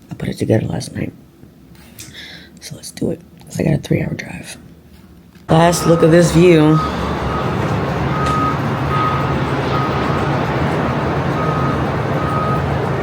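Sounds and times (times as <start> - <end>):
steady rumble and hiss: 0.0 - 13.0
reversing alarm beeping: 5.5 - 13.0.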